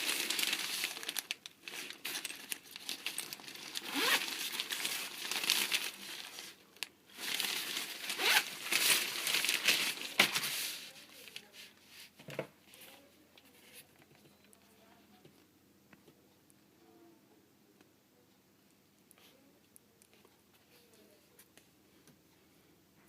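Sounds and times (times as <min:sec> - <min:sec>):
packaging tearing: 0:00.0 - 0:10.6
packaging crinkling: 0:00.0 - 0:11.5.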